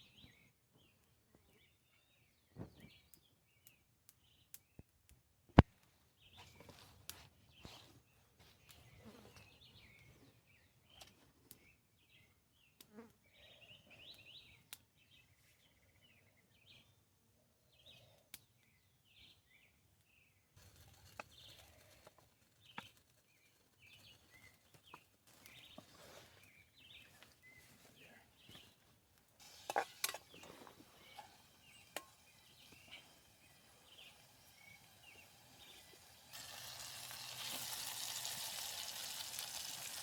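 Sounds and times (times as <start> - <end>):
small birds chirping: 0.0 - 5.0, 5.8 - 40.0.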